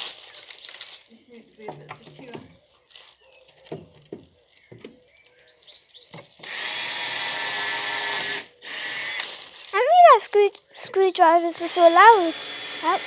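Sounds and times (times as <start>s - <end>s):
power screwdriver driving screw: 6.4s - 9.3s, 11.6s - 13.0s.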